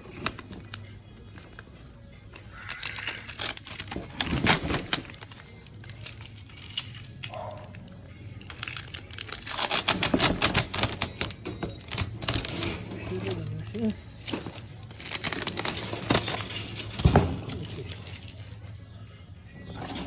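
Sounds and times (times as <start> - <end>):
plastic crinkling and rustling: 0.0 - 1.7, 2.3 - 18.8.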